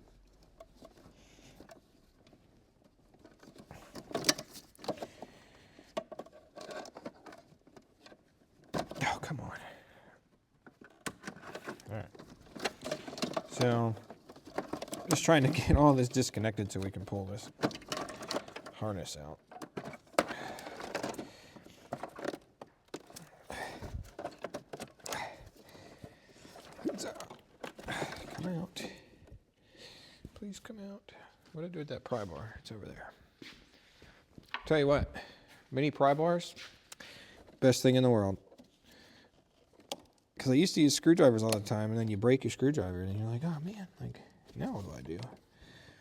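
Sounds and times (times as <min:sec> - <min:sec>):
plastic connectors clicking and rattling: 0:00.1 - 0:05.2, 0:10.6 - 0:29.0.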